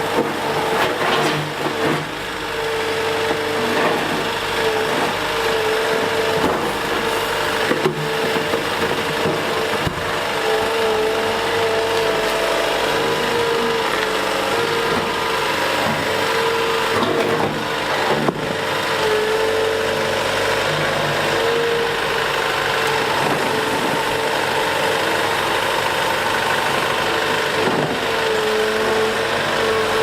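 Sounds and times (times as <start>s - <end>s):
excavator diesel engine running: 0.0s - 30.0s
hydraulic whine: 0.1s - 30.0s
clatter of knocks: 6.4s - 10.3s.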